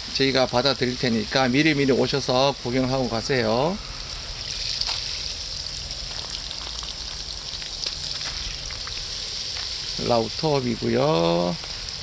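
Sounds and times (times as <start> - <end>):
water spraying from a hose: 0.0 - 12.0
water drops pattering: 4.4 - 12.0.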